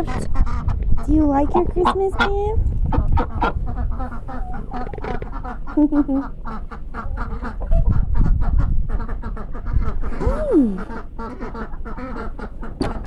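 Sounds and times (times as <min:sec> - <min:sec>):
ducks quacking: 0:00.0 - 0:13.0.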